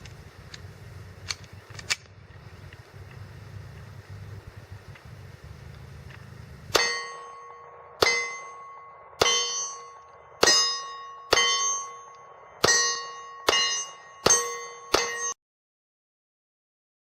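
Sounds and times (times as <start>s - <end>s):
steel target plate ringing: 6.7s - 15.4s.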